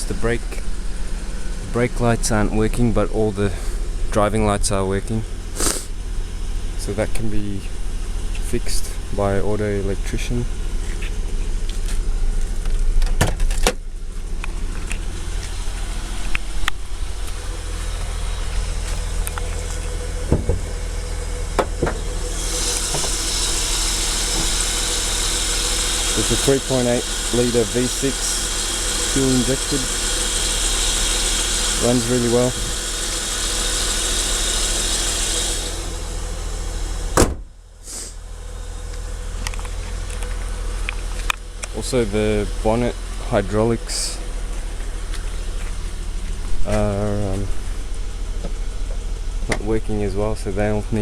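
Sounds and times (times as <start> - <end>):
car engine idling: 0.0 - 51.0
high hiss: 5.5 - 6.0, 15.6 - 37.2, 37.8 - 38.3
loud sharp thump: 20.3 - 20.7, 37.1 - 37.5
sharp clicks and knocks: 21.6 - 22.0.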